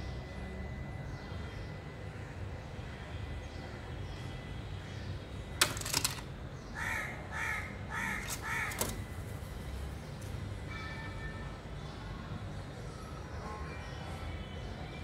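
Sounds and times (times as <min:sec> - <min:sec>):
crow cawing: 0:06.7 - 0:08.9.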